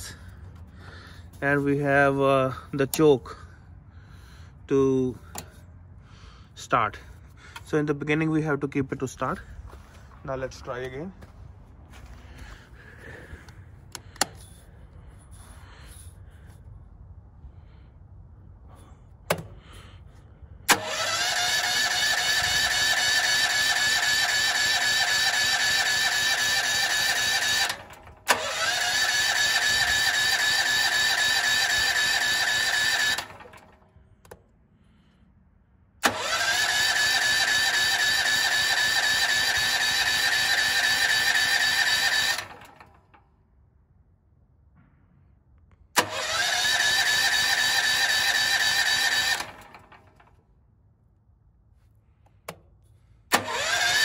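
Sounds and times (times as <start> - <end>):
generator starter cranking engine: 5.2 - 11.3, 11.9 - 16.6, 18.7 - 34.5, 36.0 - 43.4, 45.9 - 50.6, 52.2 - 54.0
starter click and rising whine: 20.7 - 34.5, 36.0 - 43.4, 45.5 - 50.5, 53.3 - 54.0.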